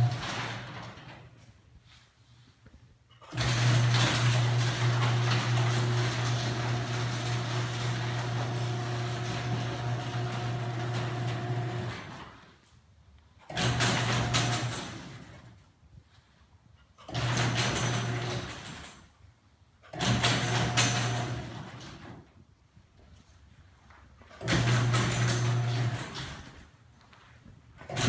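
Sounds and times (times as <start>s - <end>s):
garage door opener motor humming: 0.0s - 1.1s, 3.2s - 12.4s, 13.5s - 15.6s, 17.1s - 19.0s, 19.9s - 22.2s, 24.4s - 26.6s
garage door rattling: 0.0s - 1.5s, 3.2s - 12.6s, 13.4s - 15.6s, 17.0s - 19.2s, 19.8s - 22.4s, 24.2s - 26.8s, 27.8s - 28.0s.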